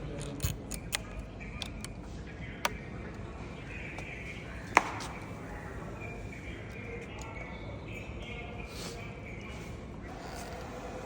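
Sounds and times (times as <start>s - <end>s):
low background noise: 0.0s - 11.0s.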